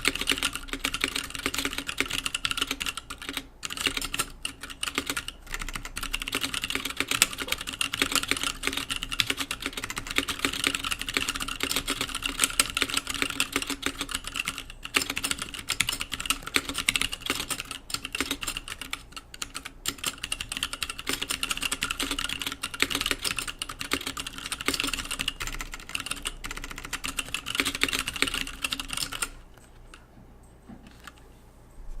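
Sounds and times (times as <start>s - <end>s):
fast mechanical keyboard typing: 0.0s - 30.0s.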